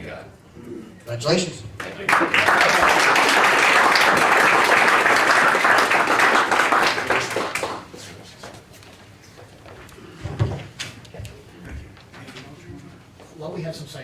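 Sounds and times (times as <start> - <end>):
audience applauding: 1.8 - 8.1.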